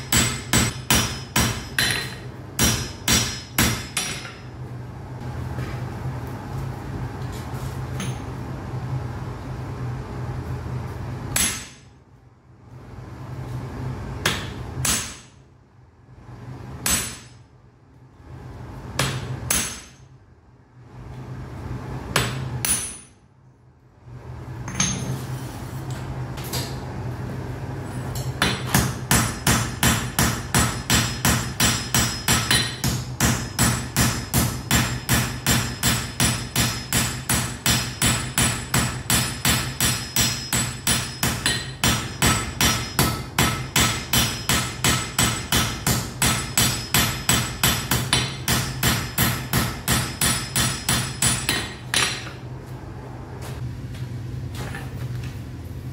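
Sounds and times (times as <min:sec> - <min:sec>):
hammer striking iron on anvil: 0:00.0 - 0:04.5, 0:08.0 - 0:08.3, 0:11.3 - 0:11.9, 0:14.2 - 0:15.4, 0:16.8 - 0:17.4, 0:19.0 - 0:20.2, 0:22.1 - 0:23.2, 0:28.2 - 0:52.4
steady low hum: 0:00.0 - 0:55.9.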